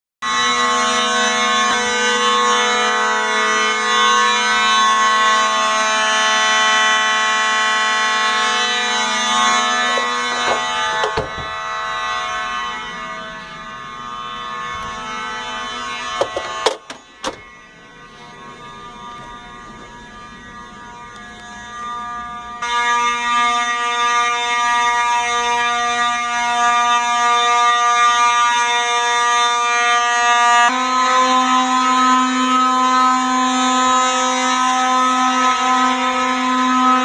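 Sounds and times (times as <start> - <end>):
fire alarm horn tone: 0.2 - 37.0
sharp knocks: 9.9 - 11.6, 16.2 - 17.5.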